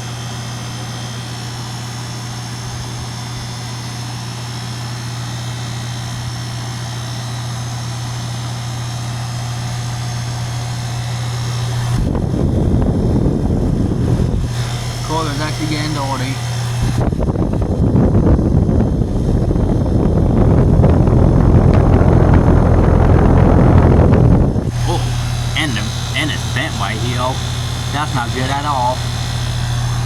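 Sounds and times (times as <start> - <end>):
condenser fan: 0.0 - 30.0
heat pump compressor hum: 0.0 - 30.0
rumble on microphone: 11.9 - 15.6, 16.6 - 26.8.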